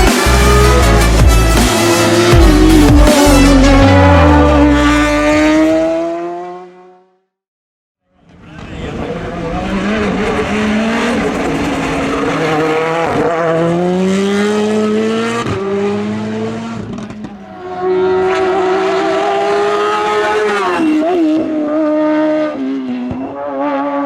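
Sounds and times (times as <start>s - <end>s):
race car engine accelerating: 0.0s - 7.2s, 8.3s - 24.0s.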